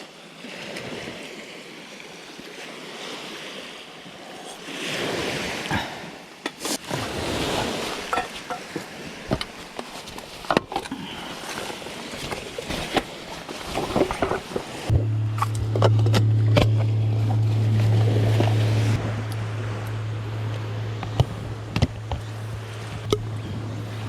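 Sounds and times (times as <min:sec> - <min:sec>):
waves: 0:00.0 - 0:24.0
motor humming: 0:14.2 - 0:24.0
handling clicks and knocks: 0:21.0 - 0:23.5.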